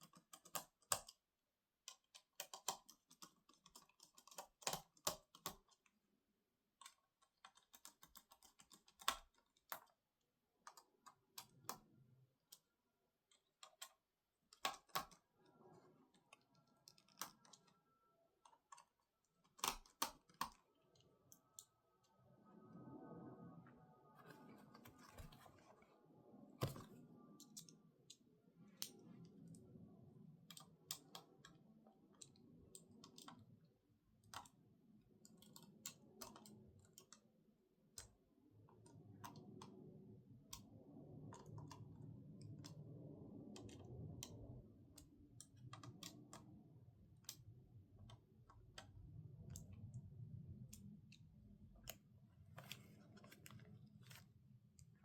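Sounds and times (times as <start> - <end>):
clicks and taps of small parts: 0.0 - 1.2, 13.3 - 15.2, 45.0 - 46.6
faint low rumble: 20.6 - 35.2, 37.7 - 55.0.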